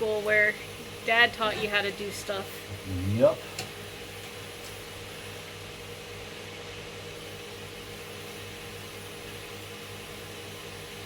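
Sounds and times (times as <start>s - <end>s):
even hiss: 2.6s - 3.6s
steady machine hum: 2.6s - 3.6s.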